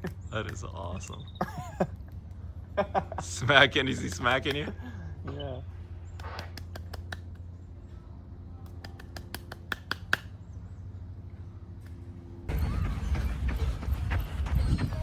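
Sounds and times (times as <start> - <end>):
steady low hum: 0.0 - 15.0
quick light hand claps: 6.1 - 7.5, 8.6 - 10.4.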